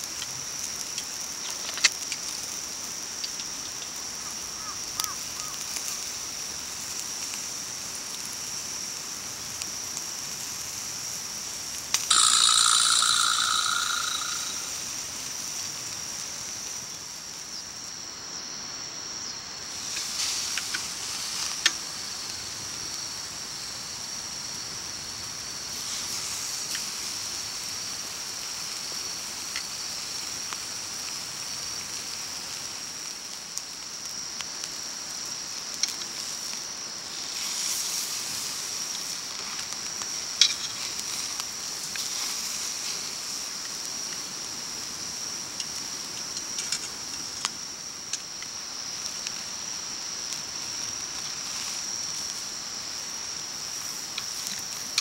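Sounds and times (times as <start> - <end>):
high-pitched insect chorus: 0.0 - 55.0
loud animal call: 12.1 - 14.8.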